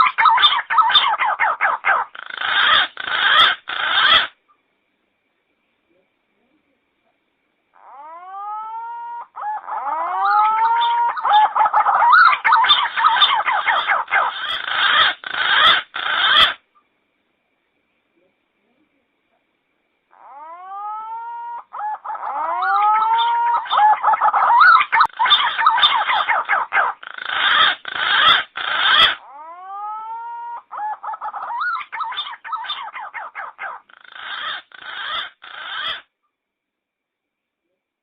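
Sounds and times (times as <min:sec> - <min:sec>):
pigeon calls whistling and warbling: 0:20.3 - 0:29.2.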